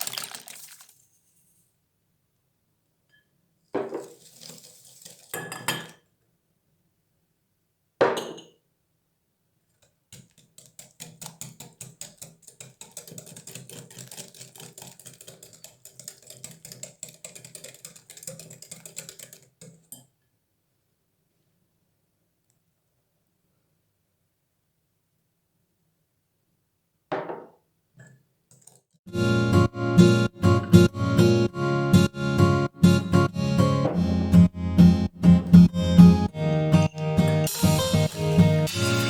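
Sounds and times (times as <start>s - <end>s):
kitchenware clattering: 3.8s - 6.1s.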